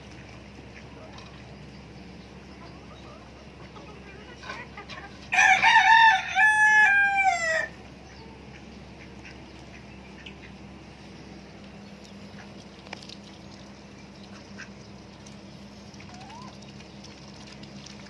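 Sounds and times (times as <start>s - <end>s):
chicken clucks: 0.1s - 10.7s, 16.0s - 17.0s
rooster crowing: 5.3s - 7.8s.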